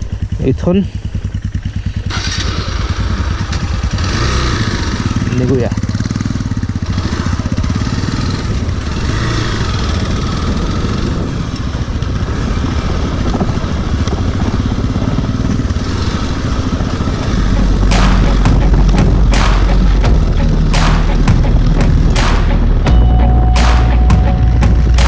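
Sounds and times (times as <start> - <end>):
motorcycle engine running: 1.0 - 11.0, 17.2 - 25.0
sharp cracks: 17.2 - 23.0, 23.6 - 25.0
heavy low rumble: 17.2 - 25.0.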